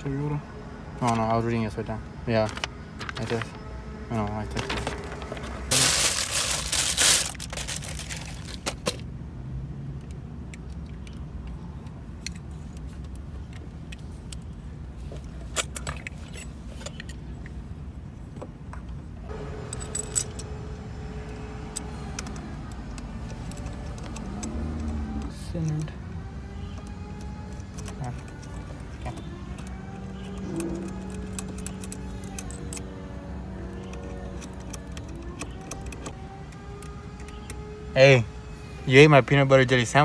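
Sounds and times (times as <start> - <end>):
metal parts and tools clinking: 5.7 - 9.0, 19.7 - 20.5.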